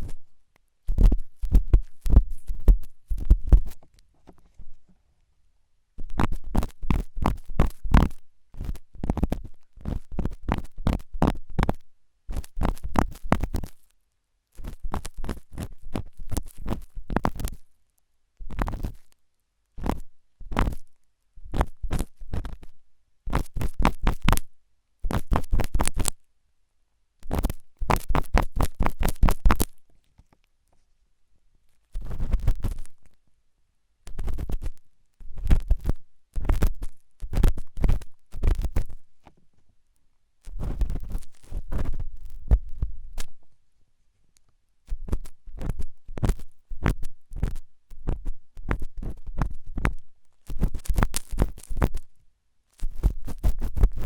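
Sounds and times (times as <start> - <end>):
ear pick scraping: 0.0 - 5.0, 6.0 - 13.9, 31.9 - 33.2, 40.4 - 43.4.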